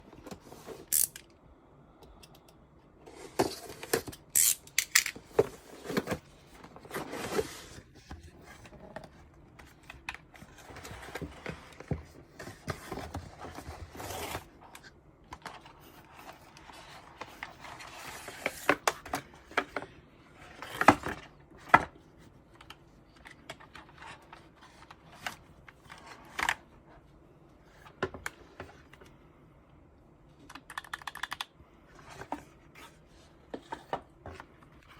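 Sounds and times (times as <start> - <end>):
mechanical keyboard typing: 30.5 - 31.5.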